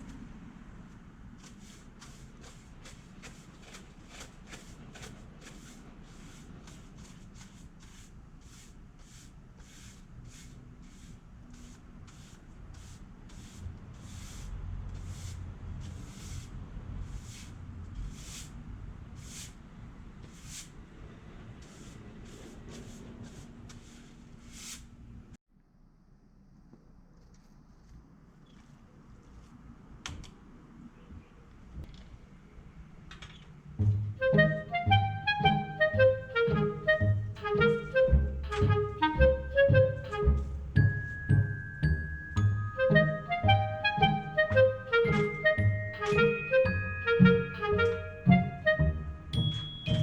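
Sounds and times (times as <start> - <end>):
brush swishing on wooden wall: 0.8 - 19.6, 20.2 - 20.8, 21.6 - 25.0.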